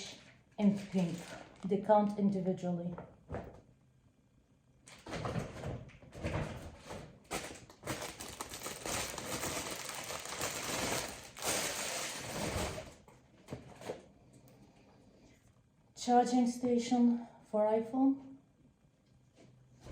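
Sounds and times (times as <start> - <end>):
plastic packaging crinkling: 0.1 - 1.9, 7.3 - 13.0.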